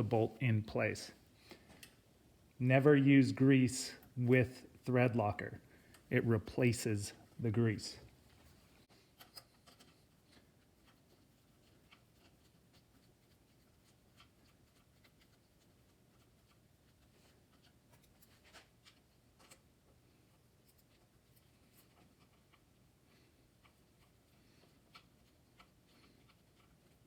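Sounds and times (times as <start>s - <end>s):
small tools clicking and rubbing: 9.1s - 27.0s.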